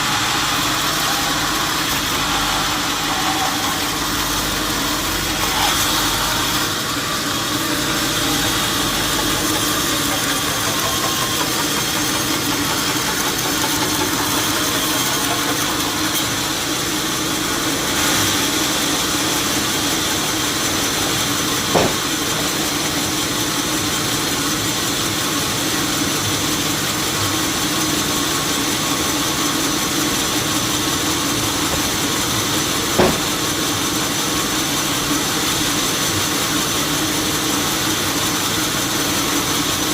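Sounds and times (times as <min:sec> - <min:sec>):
sawmill machinery humming: 0:00.0 - 0:39.9
sharp knocks: 0:21.6 - 0:22.4, 0:33.0 - 0:33.4.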